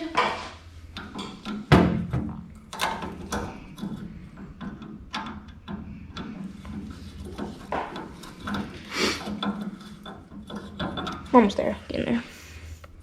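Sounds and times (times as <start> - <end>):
steady low hum: 0.0 - 13.0
hand tools clicking on metal: 0.2 - 13.0.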